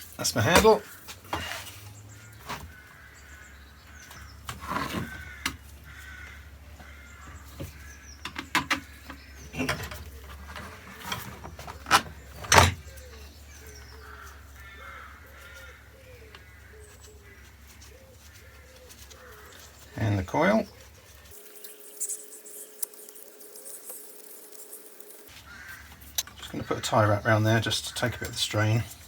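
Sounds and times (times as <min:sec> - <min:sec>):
bird calls: 0:00.4 - 0:29.0.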